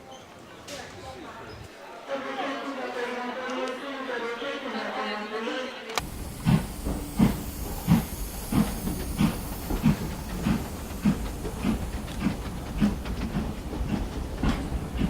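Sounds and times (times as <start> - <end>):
model steam locomotive chuffing: 6.0 - 15.0.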